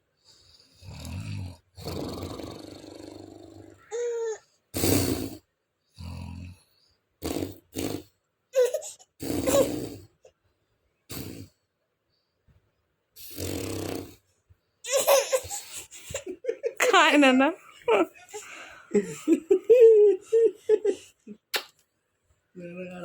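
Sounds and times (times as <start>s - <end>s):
person snoring: 0.5s - 4.0s, 4.8s - 5.4s, 6.0s - 6.6s, 7.2s - 8.1s, 9.2s - 10.1s, 13.2s - 14.2s.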